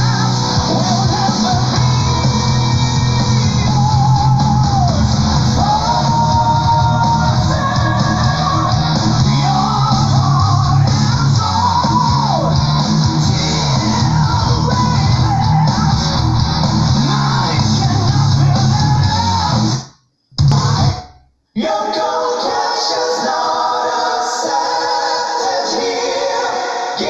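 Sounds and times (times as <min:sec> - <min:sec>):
person singing: 0:00.0 - 0:12.6, 0:13.2 - 0:19.7
electric guitars: 0:00.0 - 0:19.8
progressive metal song: 0:00.0 - 0:19.8
drums: 0:00.0 - 0:23.3.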